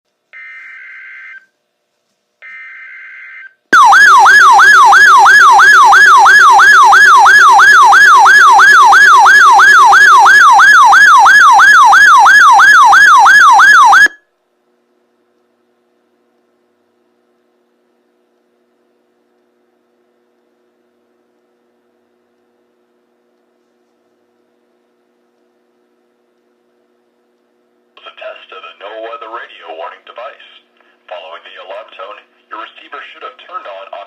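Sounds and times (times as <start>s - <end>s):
warbling siren-like alarm: 3.8s - 14.2s.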